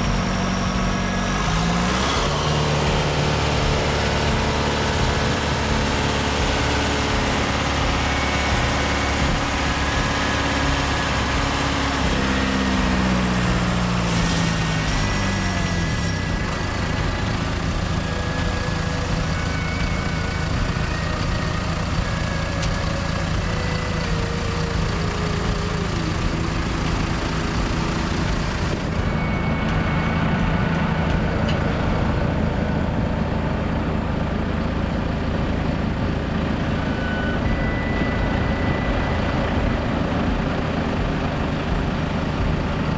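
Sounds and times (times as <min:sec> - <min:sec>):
heavy diesel engine running: 0:00.0 - 0:42.9.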